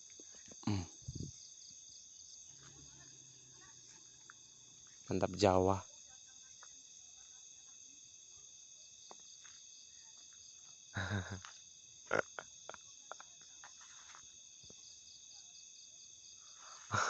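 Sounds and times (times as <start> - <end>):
crickets and insects chirping: 0.0 - 17.0.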